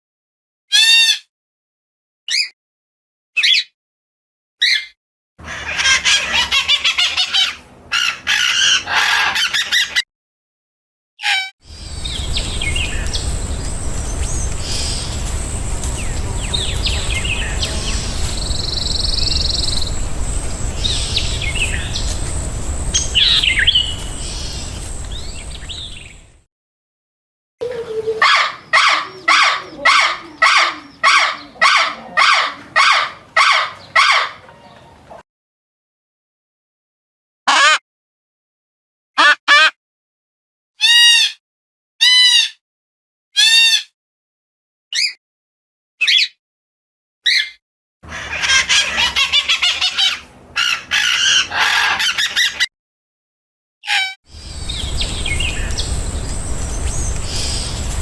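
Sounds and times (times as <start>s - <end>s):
low rumbling background: 11.7s - 26.4s, 54.3s - 58.0s
songbirds chirping: 11.7s - 26.4s, 27.6s - 35.2s, 54.3s - 58.0s.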